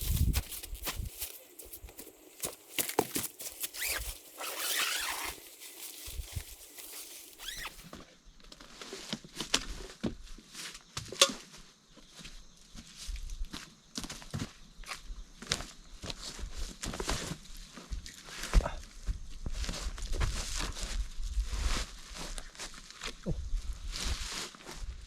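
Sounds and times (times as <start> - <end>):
footsteps in leaf litter: 0.0 - 7.9.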